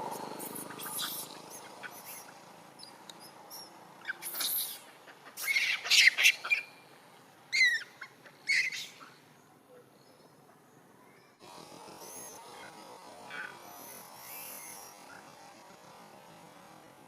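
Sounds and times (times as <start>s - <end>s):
monkeys screeching: 0.3s - 2.4s, 3.5s - 6.8s, 7.5s - 9.1s.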